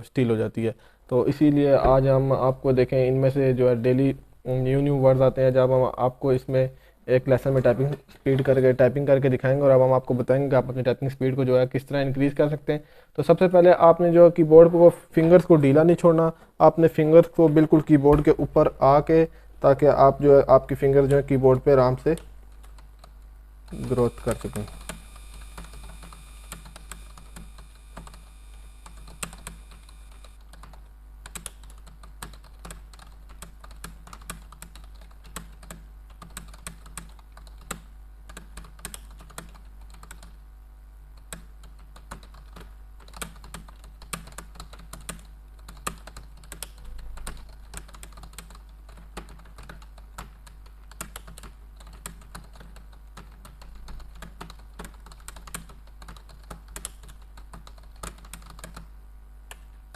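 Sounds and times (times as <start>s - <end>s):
steady low hum: 0.0s - 59.9s
fast keyboard typing: 22.1s - 40.4s, 41.2s - 58.9s.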